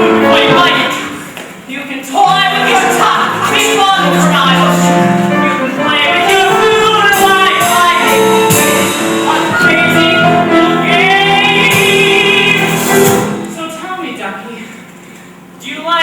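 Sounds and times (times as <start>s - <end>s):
singers with accompaniment: 0.0s - 14.2s.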